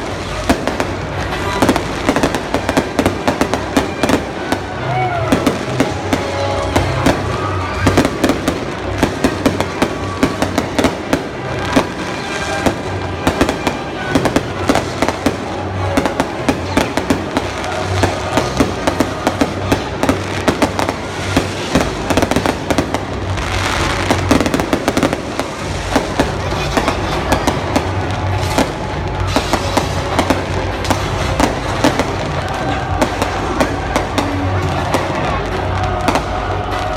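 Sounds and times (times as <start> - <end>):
fireworks bangs and crackles: 0.0 - 36.9.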